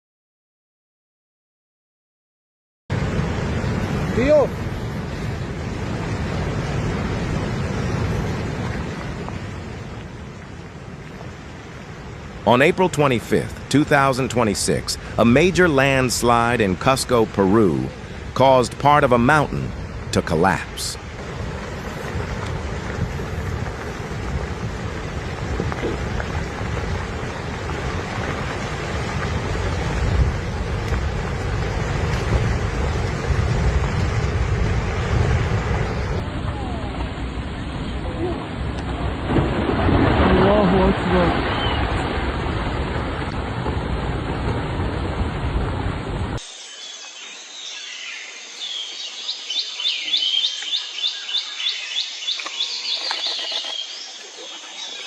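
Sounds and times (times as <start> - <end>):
wind noise on microphone: 2.9 - 12.5, 17.8 - 46.4
rumble of sliding rock: 2.9 - 46.4
bird chirping: 46.5 - 55.0.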